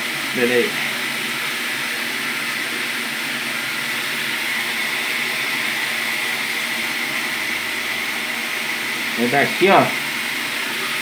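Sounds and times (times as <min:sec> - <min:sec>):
water filling washing machine: 0:00.0 - 0:11.0.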